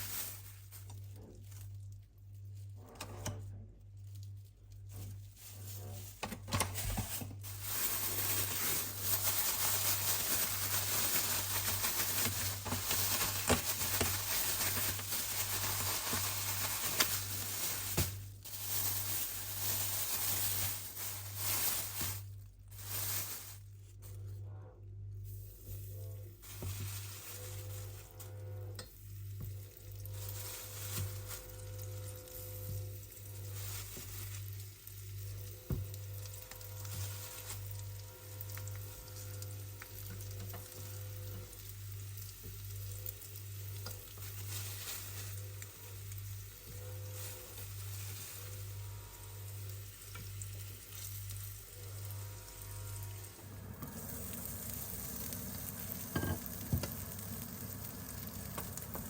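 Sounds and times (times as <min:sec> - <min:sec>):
fish frying in oil: 0:53.9 - 0:59.0.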